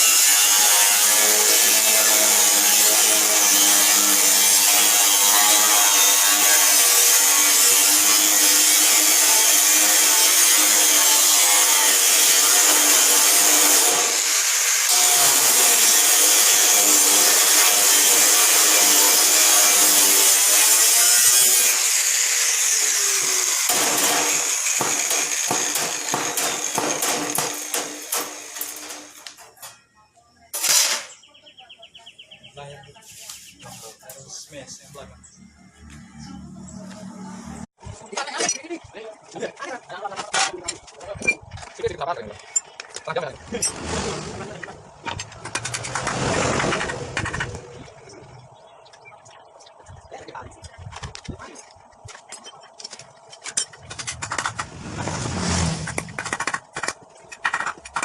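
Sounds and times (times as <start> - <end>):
power tool cutting: 0.0 - 29.7.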